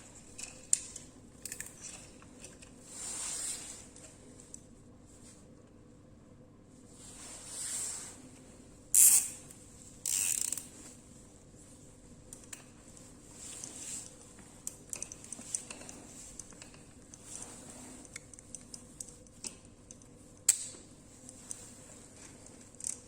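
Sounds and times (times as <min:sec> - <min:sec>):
small object clicking and rattling: 0:14.7 - 0:17.4.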